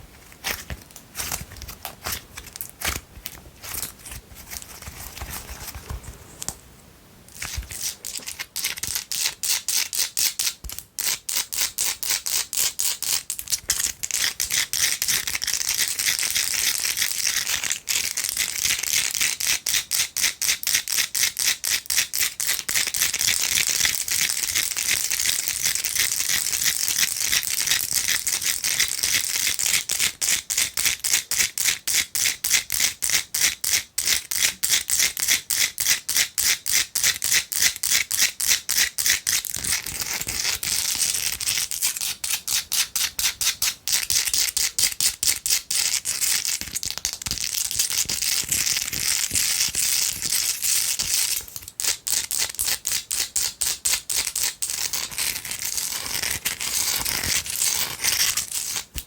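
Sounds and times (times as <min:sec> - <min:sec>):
dry scratchy hiss: 0:33.0 - 0:59.0.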